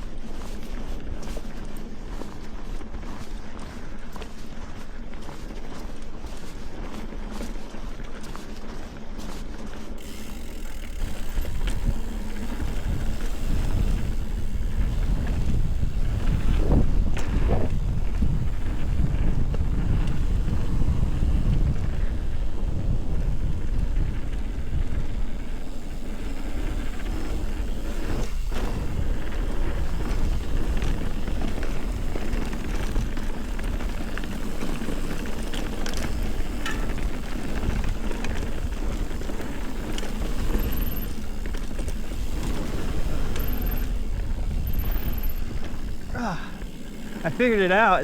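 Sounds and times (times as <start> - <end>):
tyres rumbling over dirt trail: 0.0 - 48.0
bike clicks and rattles: 6.2 - 48.0
wind on microphone: 10.1 - 47.5.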